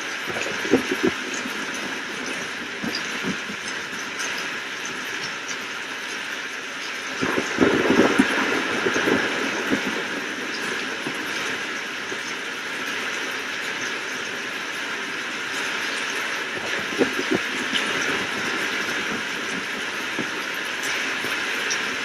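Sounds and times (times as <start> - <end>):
heavy rain hissing: 0.0 - 22.0
low thunder rumbles: 7.2 - 12.3.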